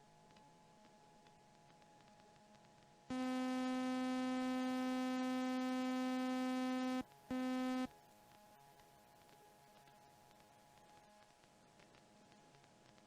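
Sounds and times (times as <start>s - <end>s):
buzzy electronic warning tone: 3.1s - 7.9s.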